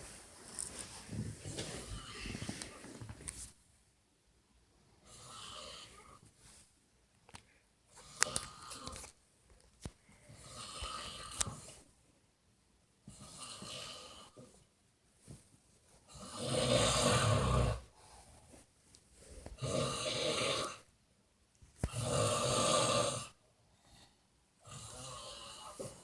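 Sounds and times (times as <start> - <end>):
person snoring loudly: 16.2 - 17.9, 19.6 - 20.8, 21.9 - 23.4, 24.6 - 26.0.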